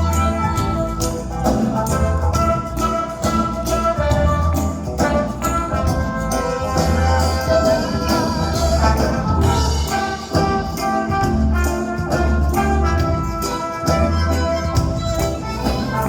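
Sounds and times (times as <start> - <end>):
brass: 0.0 - 16.0
live band playing pop music: 0.0 - 16.0.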